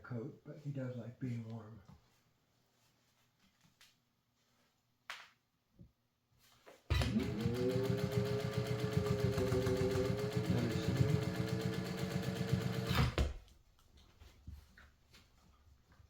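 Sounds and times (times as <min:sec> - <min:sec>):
sewing machine stitching: 0:06.9 - 0:13.4.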